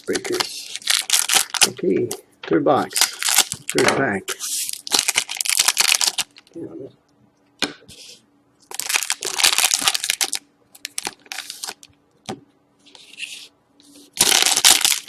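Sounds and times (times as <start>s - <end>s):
card pack wrapper tearing and crinkling: 0.0s - 1.8s, 2.9s - 6.5s, 8.7s - 11.9s, 14.2s - 15.0s.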